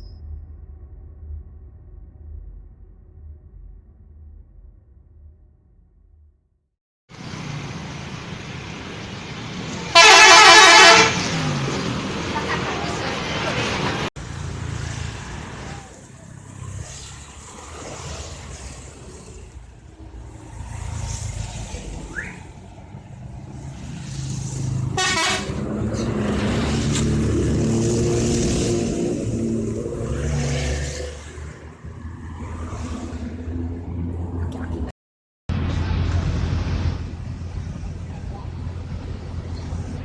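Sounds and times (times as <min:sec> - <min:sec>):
bus engine rumble: 0:07.1 - 0:34.9, 0:35.5 - 0:40.0
multi-tone bus horn melody: 0:09.9 - 0:11.4, 0:24.9 - 0:25.7.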